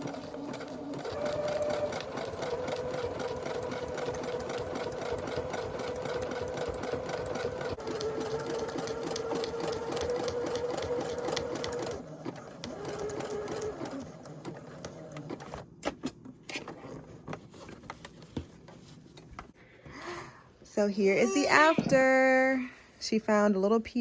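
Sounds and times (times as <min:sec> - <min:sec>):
electric sewing machine running: 0:00.0 - 0:15.4.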